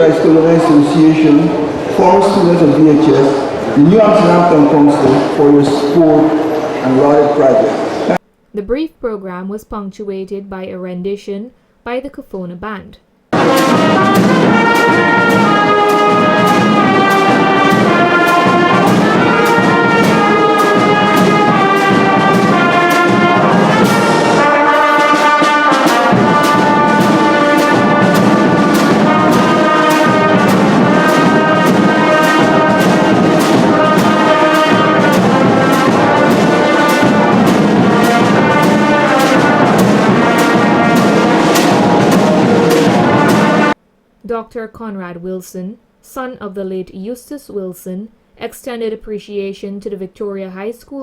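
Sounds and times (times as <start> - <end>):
brass band playing: 0.0 - 8.2, 13.3 - 43.8.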